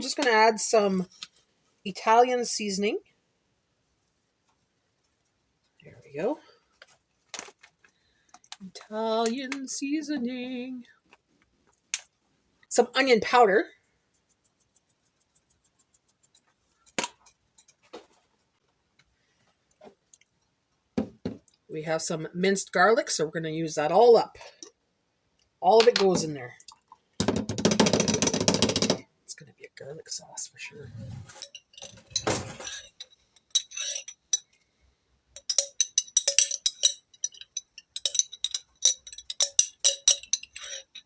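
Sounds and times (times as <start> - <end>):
metal spoon clinking on glass: 31.4 - 34.6, 35.4 - 41.0.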